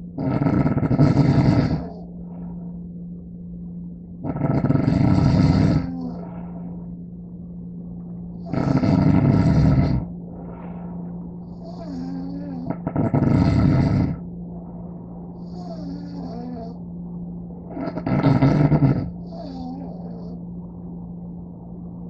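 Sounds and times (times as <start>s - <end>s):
steady low hum: 0.0s - 22.0s
loud snoring: 0.2s - 2.0s, 4.2s - 6.3s, 8.4s - 10.1s, 11.6s - 14.2s, 15.5s - 16.8s, 17.7s - 20.3s.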